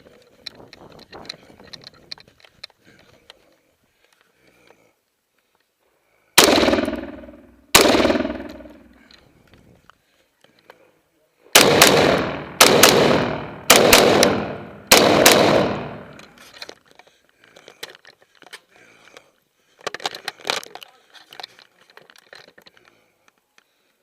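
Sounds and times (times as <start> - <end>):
rifle shots: 6.4 - 9.0, 11.5 - 16.3.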